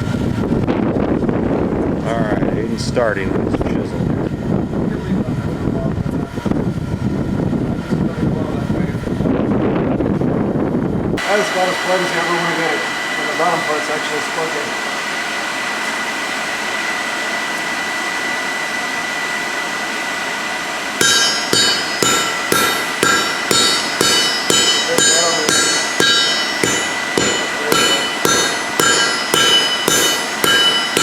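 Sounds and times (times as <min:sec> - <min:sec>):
forge air blower rushing: 0:00.0 - 0:31.0
hammer blows on anvil: 0:21.0 - 0:31.0.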